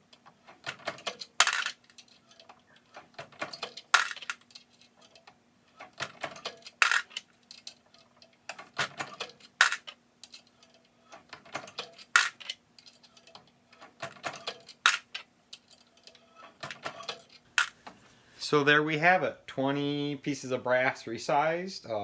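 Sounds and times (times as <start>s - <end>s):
brass cases clinking: 3.6s - 4.7s, 6.1s - 7.2s, 9.0s - 9.9s, 11.8s - 13.1s.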